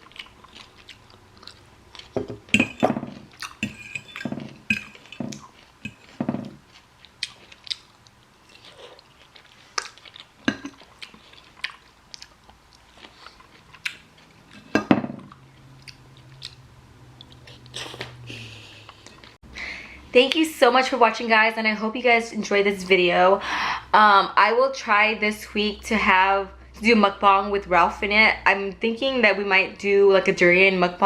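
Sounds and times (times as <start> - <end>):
person chewing food: 0.0 - 19.4.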